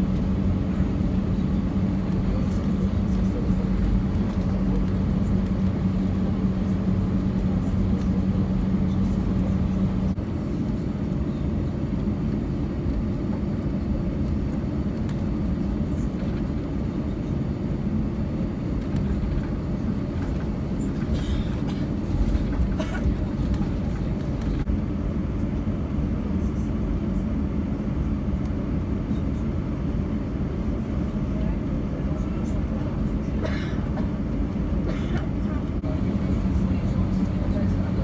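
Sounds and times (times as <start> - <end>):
steady hum: 0.0 - 10.2, 34.4 - 38.0
air conditioning: 0.0 - 38.0
aircraft engines rumbling: 0.0 - 38.0.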